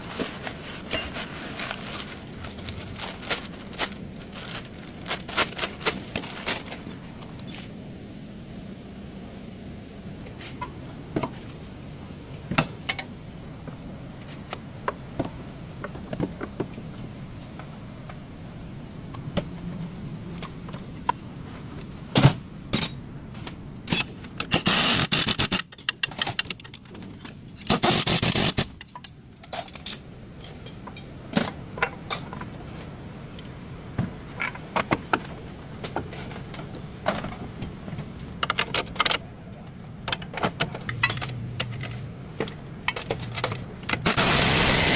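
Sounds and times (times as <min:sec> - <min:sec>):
metal tools clinking and scraping: 0:00.3 - 0:03.5, 0:05.2 - 0:08.2, 0:23.9 - 0:31.2
loud rattling bursts: 0:44.0 - 0:44.9.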